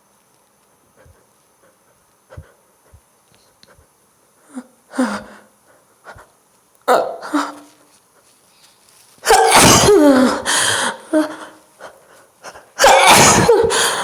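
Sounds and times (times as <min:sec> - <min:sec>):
woman sneezing: 0:06.9 - 0:07.7, 0:09.2 - 0:11.5, 0:12.5 - 0:14.0.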